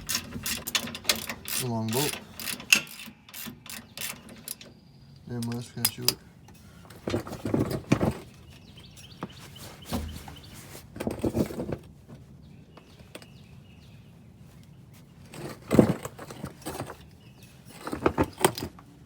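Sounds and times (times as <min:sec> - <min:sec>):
metallic clinking of hand tools: 0:00.0 - 0:04.7, 0:05.4 - 0:06.2.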